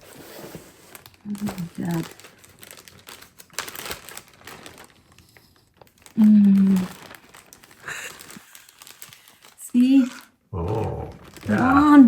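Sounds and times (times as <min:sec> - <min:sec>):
plastic packaging crinkling: 0:00.0 - 0:12.0
person humming: 0:06.2 - 0:06.9, 0:10.6 - 0:12.0.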